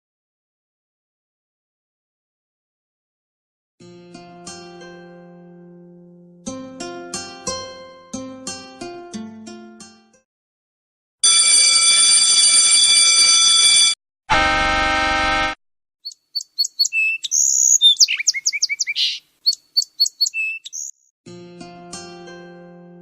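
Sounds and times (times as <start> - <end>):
buzzing tone: 14.3 - 15.6
steady electronic tone: 14.3 - 15.6
bird-like chirps and whistles: 16.0 - 21.1.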